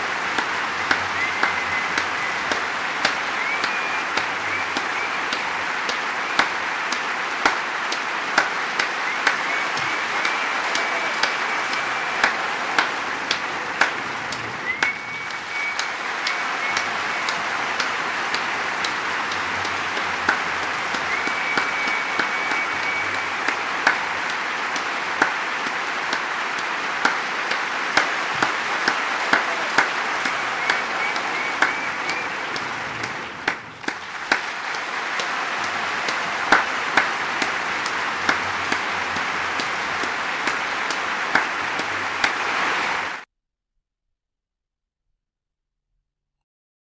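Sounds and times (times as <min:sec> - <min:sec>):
high whistle: 0:00.0 - 0:07.6, 0:08.4 - 0:25.3, 0:28.0 - 0:41.0
crowd cheering and clapping: 0:00.0 - 0:43.3
sharp claps: 0:00.0 - 0:43.3.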